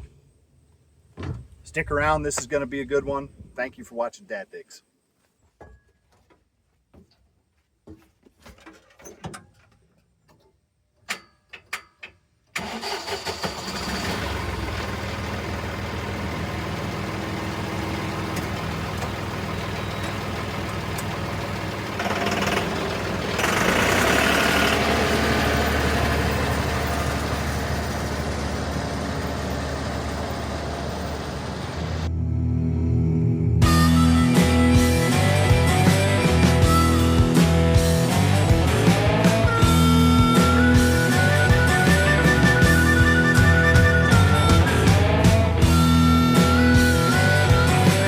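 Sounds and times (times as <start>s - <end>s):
diesel tractor engine starting: 12.5s - 48.0s.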